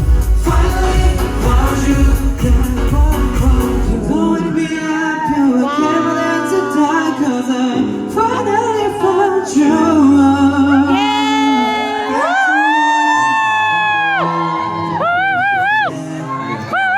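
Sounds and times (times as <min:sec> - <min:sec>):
drums and heavy bass: 0:00.0 - 0:04.0
male vocal group singing: 0:00.0 - 0:12.9.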